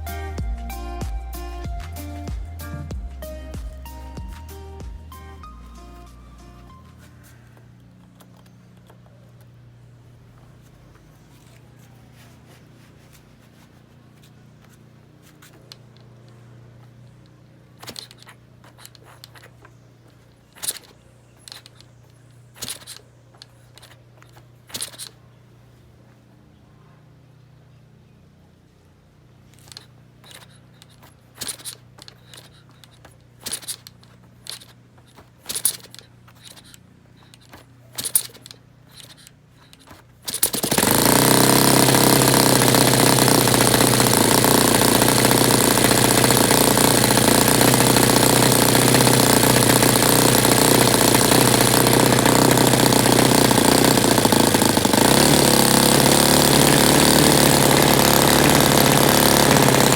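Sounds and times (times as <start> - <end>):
model aircraft engine running: 17.8 - 25.2, 29.6 - 59.9
sharp irregular clicks and knocks: 17.8 - 25.2, 29.5 - 59.9.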